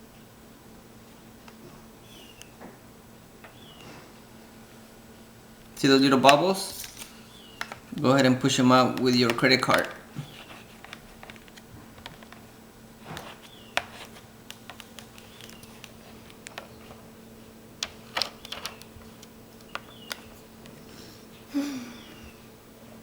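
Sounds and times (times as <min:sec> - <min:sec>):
faint steady hum: 0:00.0 - 0:23.0
plastic card clicking and scraping: 0:06.2 - 0:17.0, 0:17.8 - 0:20.8.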